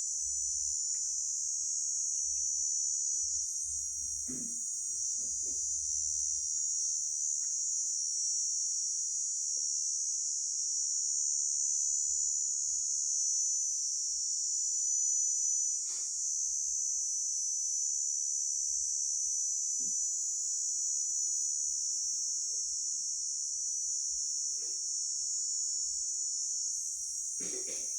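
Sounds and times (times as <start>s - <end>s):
grasshopper buzzing trill: 24.3s - 27.9s.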